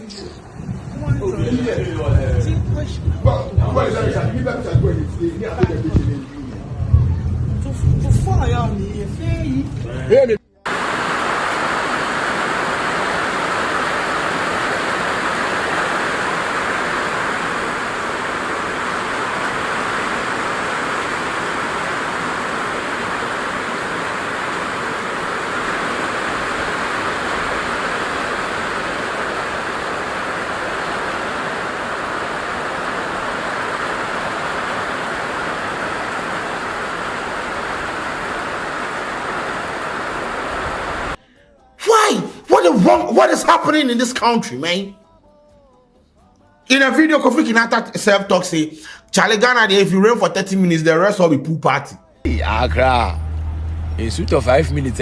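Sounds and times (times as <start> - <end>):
floodwater rushing: 10.7 - 41.2.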